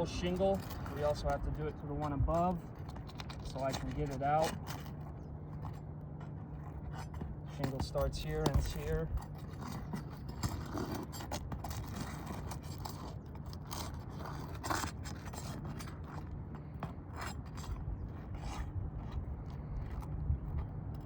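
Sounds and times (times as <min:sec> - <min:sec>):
steady low rumble: 0:00.0 - 0:10.8, 0:15.8 - 0:21.0.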